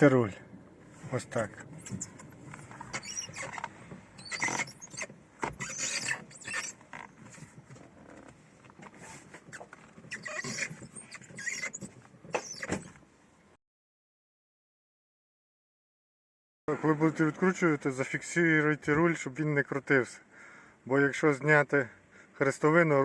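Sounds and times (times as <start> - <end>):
steering wheel creaking: 0.6 - 13.1.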